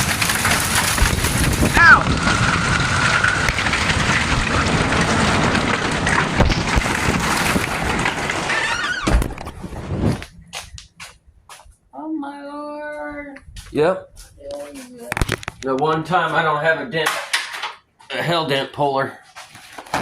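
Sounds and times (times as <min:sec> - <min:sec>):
hail and rain hitting a car: 0:00.0 - 0:09.5.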